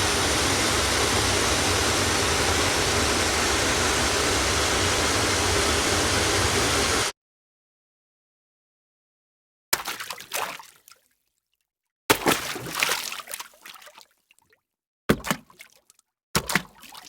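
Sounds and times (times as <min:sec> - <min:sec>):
water splashes with trickle: 0:09.8 - 0:11.1, 0:12.1 - 0:17.0.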